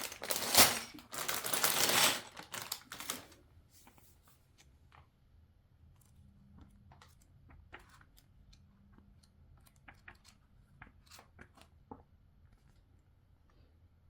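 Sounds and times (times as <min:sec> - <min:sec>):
packaging clicks and rustles: 0:00.0 - 0:03.4.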